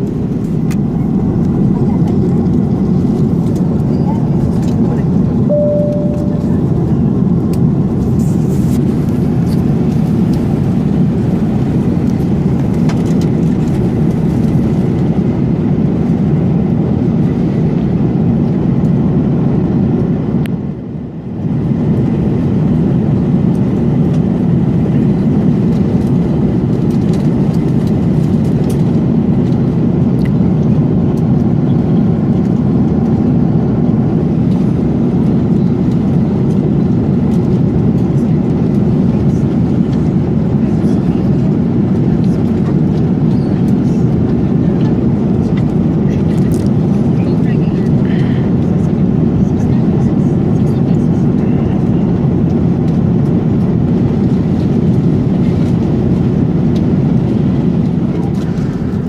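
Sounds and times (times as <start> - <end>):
airplane cabin engine rumble: 0.0 - 59.0.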